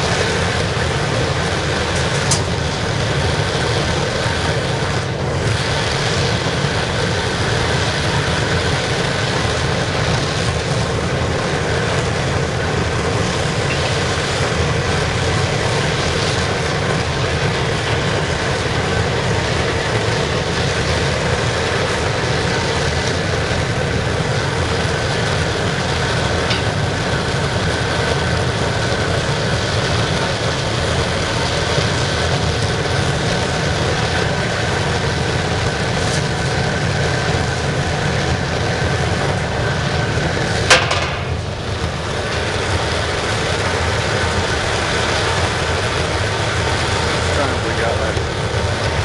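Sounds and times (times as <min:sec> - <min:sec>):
oil burner flame roaring: 0:00.0 - 0:49.0
sharp knock: 0:40.7 - 0:41.5.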